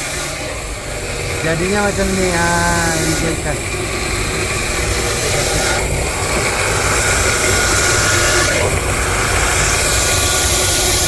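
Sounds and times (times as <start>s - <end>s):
mincing machine running: 0.0s - 11.0s
faint high hum: 0.8s - 5.4s.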